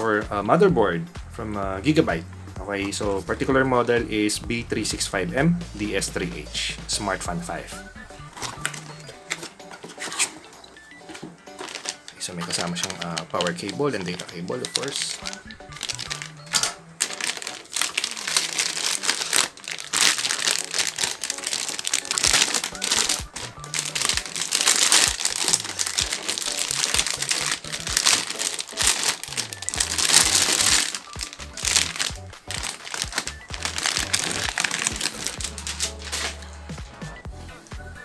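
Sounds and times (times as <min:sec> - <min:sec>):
background music: 0:00.0 - 0:38.0
plastic packaging crinkling: 0:07.8 - 0:36.9.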